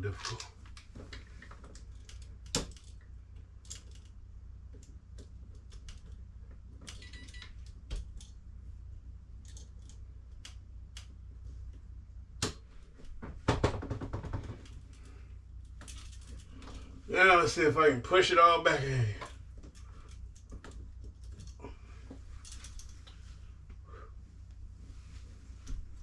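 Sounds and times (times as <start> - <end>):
clicks and scrapes of wiring work: 0.0 - 8.4, 9.4 - 11.8, 14.4 - 17.0, 19.2 - 23.4.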